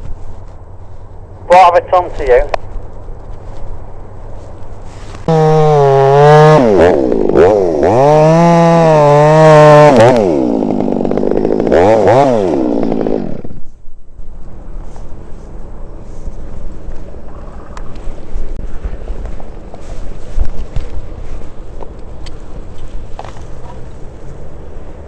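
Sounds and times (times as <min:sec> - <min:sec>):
chainsaw cutting wood: 0:05.2 - 0:13.7.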